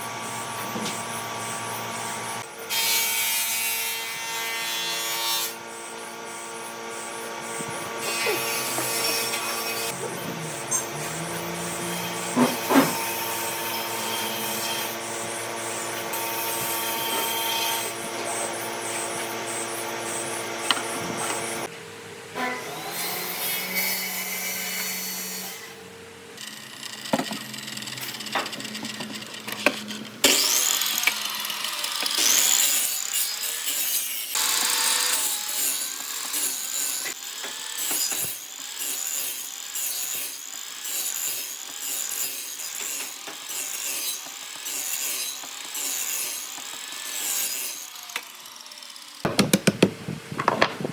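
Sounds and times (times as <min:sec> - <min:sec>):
power tool motor whine: 0:00.0 - 0:02.8, 0:05.5 - 0:21.7, 0:22.5 - 0:39.4
tool scraping wood: 0:05.1 - 0:21.7, 0:49.2 - 0:50.9.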